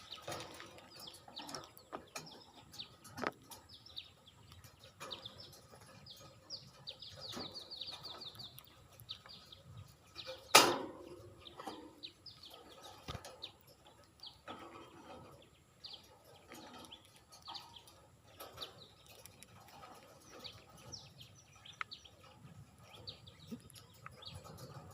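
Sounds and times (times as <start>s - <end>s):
budgerigars chirping: 3.6s - 19.2s.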